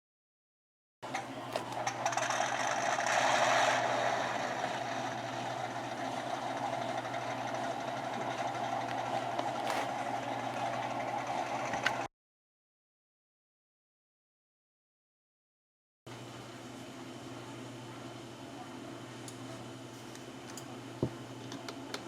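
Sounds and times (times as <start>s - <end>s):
tank engine running with clatter: 1.8s - 12.1s.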